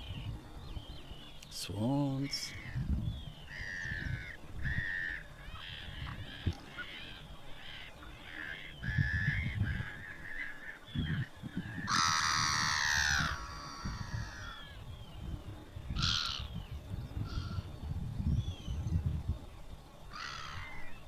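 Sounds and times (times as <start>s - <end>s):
gulls calling: 0.0s - 17.7s, 20.1s - 21.0s
low gusting rumble: 2.5s - 6.6s, 8.8s - 20.9s.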